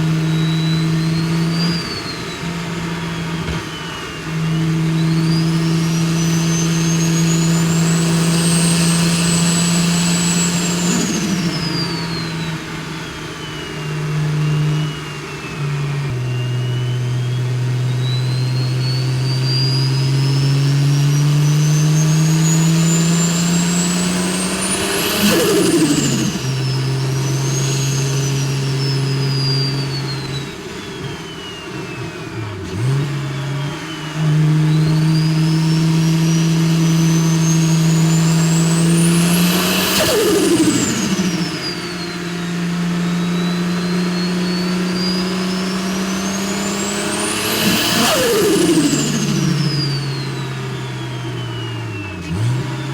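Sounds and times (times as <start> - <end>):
car engine pulling under load: 0.0 - 52.9
turbo whistle: 0.0 - 52.9
turbo flutter: 21.0 - 32.1, 33.7 - 42.6, 44.8 - 52.9.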